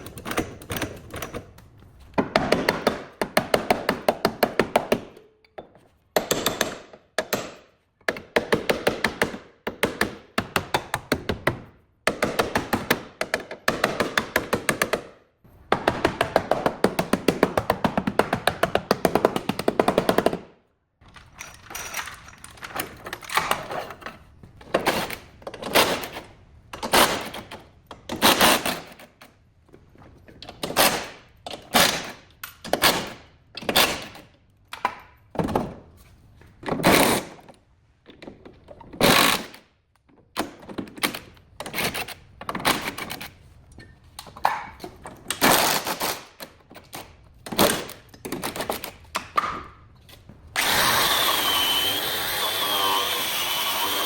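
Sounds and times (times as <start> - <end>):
harsh shop tool bursts and knocks: 6.2 - 15.1.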